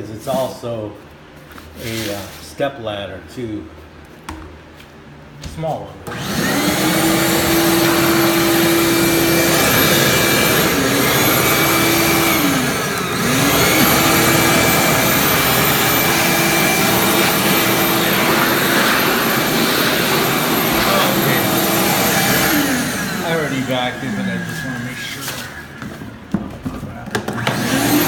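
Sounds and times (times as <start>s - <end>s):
shop vacuum motor whining: 6.0s - 28.0s.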